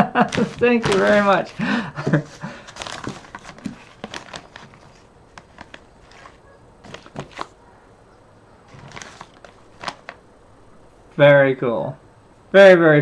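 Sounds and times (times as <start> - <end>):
plastic bags rustling: 0.0 - 7.6, 8.7 - 10.2.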